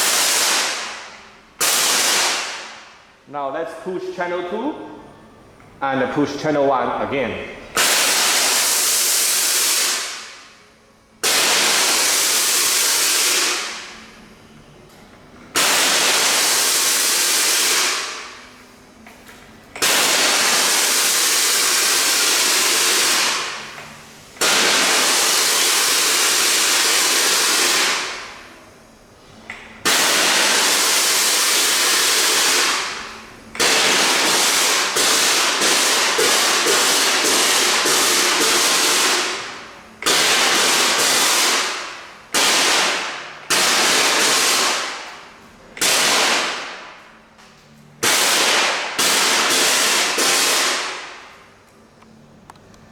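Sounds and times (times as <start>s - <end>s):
gas jet machine hissing blasts: 0.0s - 3.0s, 7.8s - 10.4s, 11.2s - 13.9s, 15.6s - 18.4s, 19.8s - 28.6s, 29.8s - 45.0s, 45.8s - 46.9s.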